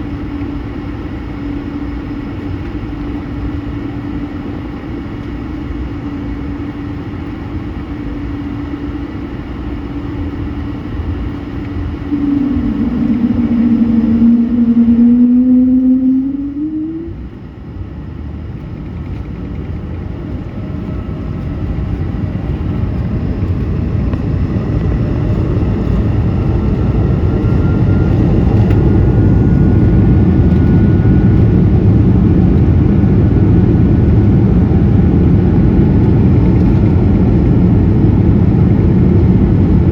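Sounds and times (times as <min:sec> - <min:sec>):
aircraft engine whining hum: 0:00.0 - 0:39.9
broad rumble: 0:11.9 - 0:17.6.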